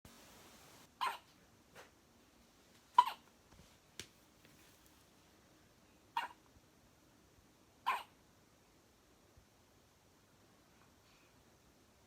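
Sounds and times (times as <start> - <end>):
baby hiccuping: 1.0 - 1.3, 3.0 - 3.2, 6.2 - 6.4, 7.9 - 8.2.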